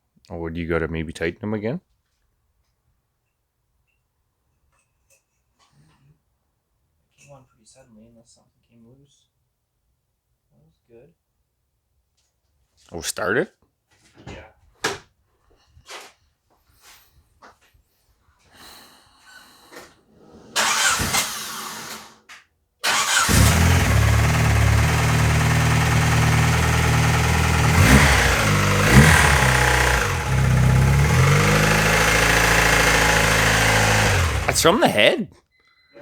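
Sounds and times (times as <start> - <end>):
car engine cranking and idling: 20.6 - 21.4, 22.8 - 35.0
engine revving: 20.6 - 21.6, 22.8 - 34.9
engine valve clatter: 22.9 - 34.8.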